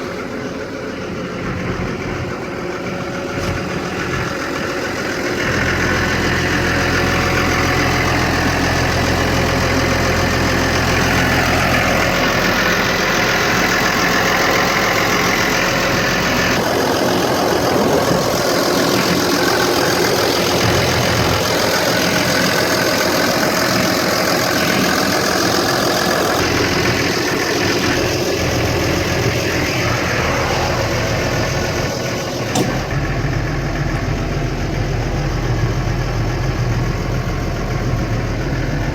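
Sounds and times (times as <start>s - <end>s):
tractor diesel engine running: 0.0s - 38.9s.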